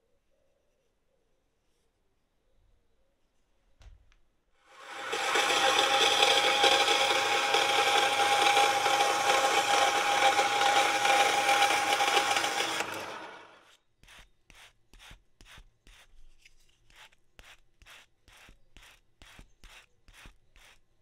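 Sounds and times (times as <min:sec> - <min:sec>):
electric power tool whining: 0:04.7 - 0:13.7.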